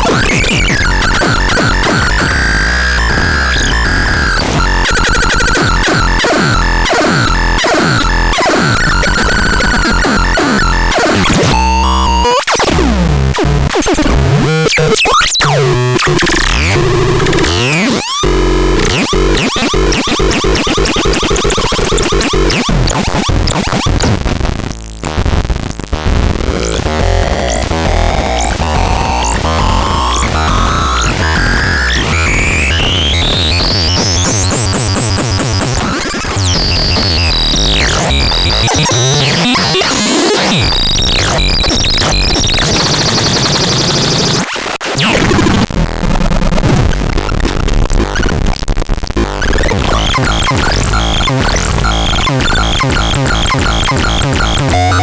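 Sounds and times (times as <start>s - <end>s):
distorted synthesizer music: 0.0s - 55.0s
low bass: 24.1s - 35.5s.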